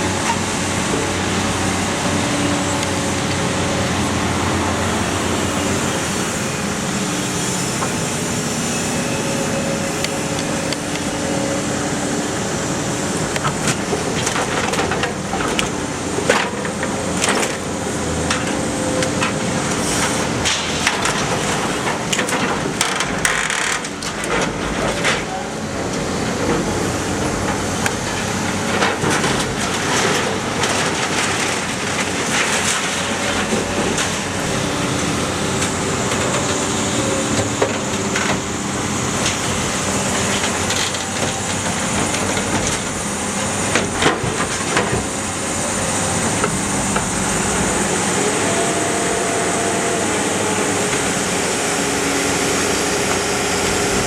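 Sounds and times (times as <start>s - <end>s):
baler machine drone: 25.7s - 54.0s
scrap metal knocking and crunching: 26.4s - 38.5s.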